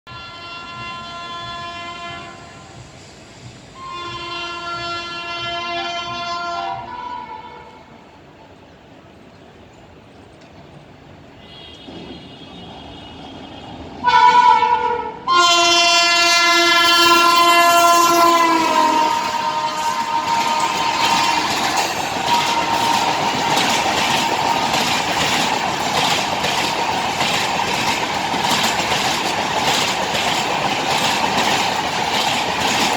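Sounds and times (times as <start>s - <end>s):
train horn blasts: 0.1s - 2.8s, 3.8s - 8.1s, 11.4s - 25.4s.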